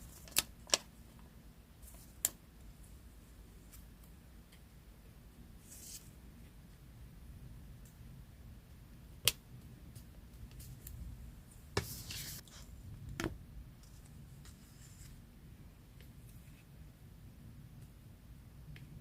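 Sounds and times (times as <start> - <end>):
paper rustling: 11.8 - 12.6.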